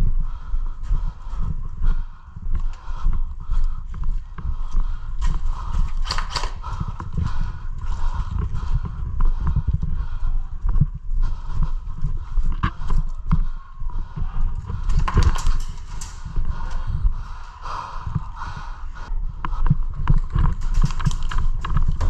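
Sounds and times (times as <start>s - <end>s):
running footsteps: 0.0s - 22.0s
gear jostling: 14.5s - 17.6s, 19.8s - 22.0s.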